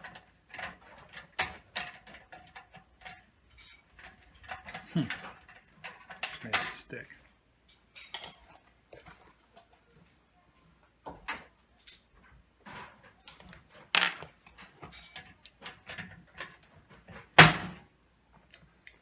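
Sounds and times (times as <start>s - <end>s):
metal tools clinking: 7.7s - 9.9s, 13.1s - 15.4s.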